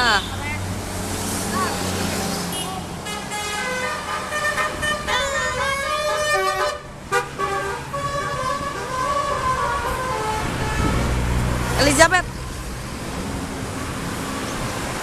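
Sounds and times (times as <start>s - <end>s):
multi-tone bus horn tune: 2.5s - 11.3s.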